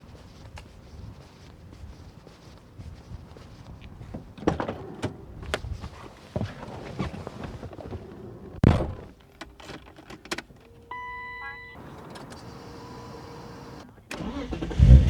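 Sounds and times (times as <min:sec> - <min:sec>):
car door shutting: 0:10.3 - 0:15.0.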